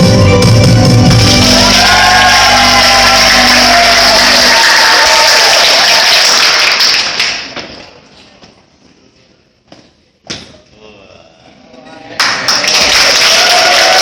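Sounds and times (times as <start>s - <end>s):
dance music: 0.0s - 6.0s
crowd clapping and cheering: 0.0s - 7.8s, 12.1s - 14.0s.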